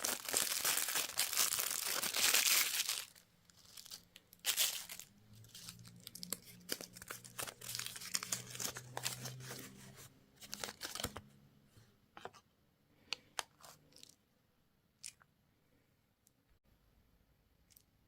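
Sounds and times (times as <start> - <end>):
candy wrapper crinkling: 0.0 - 9.8, 10.4 - 11.2.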